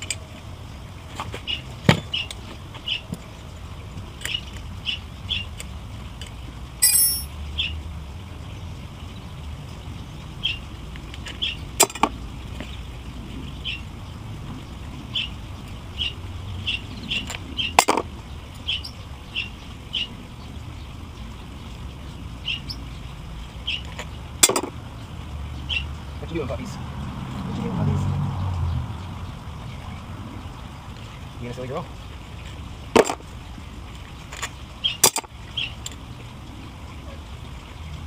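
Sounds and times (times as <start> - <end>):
metallic ringing knock: 6.8 - 7.3.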